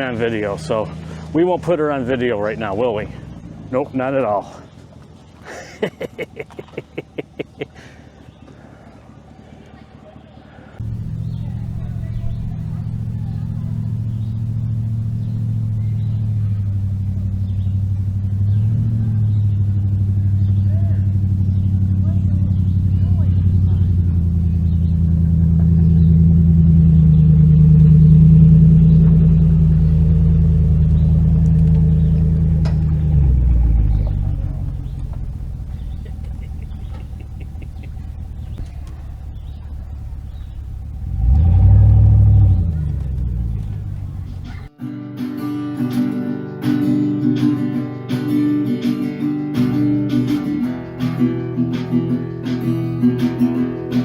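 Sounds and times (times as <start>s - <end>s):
vehicle engine humming: 0.0s - 44.8s
strummed acoustic guitar: 44.4s - 54.0s.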